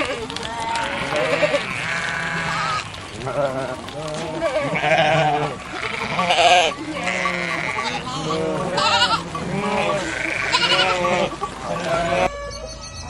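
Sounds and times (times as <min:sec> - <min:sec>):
sheep bleating: 0:00.0 - 0:12.3.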